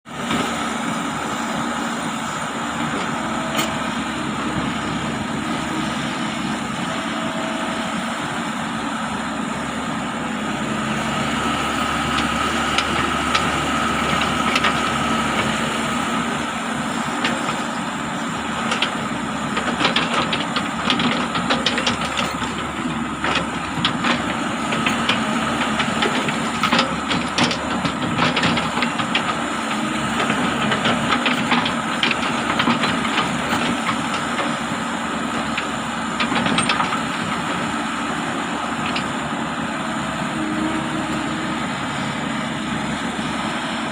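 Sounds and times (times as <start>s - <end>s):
excavator diesel engine running: 0.1s - 43.9s
sharp clicks and knocks: 19.6s - 29.4s, 35.5s - 37.5s.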